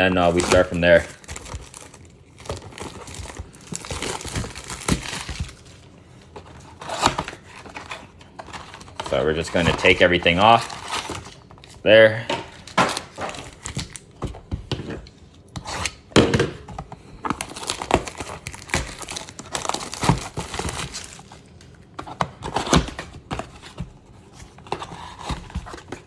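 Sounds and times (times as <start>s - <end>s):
plastic wrap and cardboard tearing: 0.0s - 5.8s, 6.4s - 14.2s, 17.3s - 21.4s.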